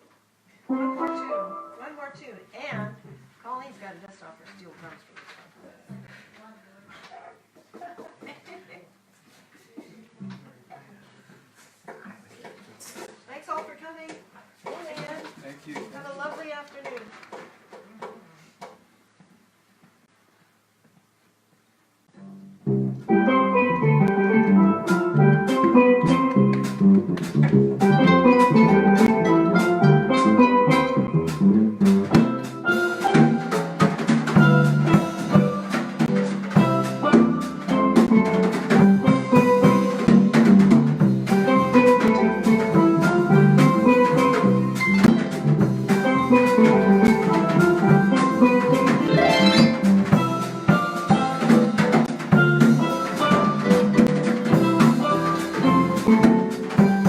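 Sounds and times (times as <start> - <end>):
harp plucking notes: 0.7 - 2.2, 22.9 - 27.2, 27.8 - 40.4, 46.0 - 51.4
drums and percussion: 11.9 - 18.9, 23.0 - 57.0.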